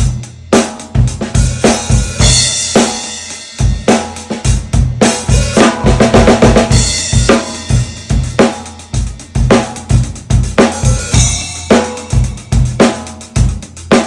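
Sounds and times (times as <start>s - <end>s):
cymbals: 6.7s - 14.0s.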